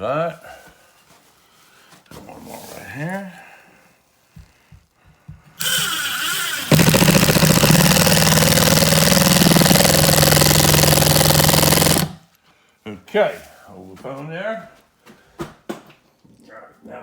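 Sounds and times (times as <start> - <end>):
power drill driving screw: 5.6 - 12.2.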